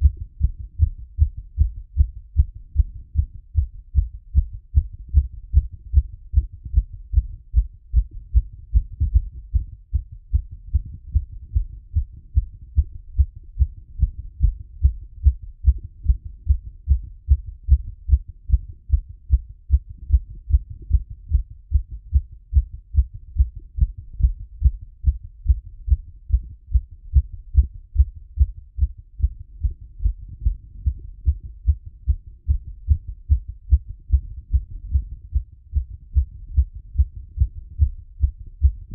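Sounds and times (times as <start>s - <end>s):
heartbeat thumps: 0.0s - 38.9s.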